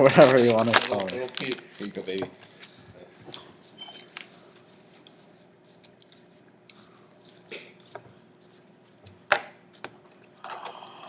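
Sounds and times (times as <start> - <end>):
sharp loud foil crackle: 0.0 - 1.9
foil wrapper crinkling: 0.0 - 2.7.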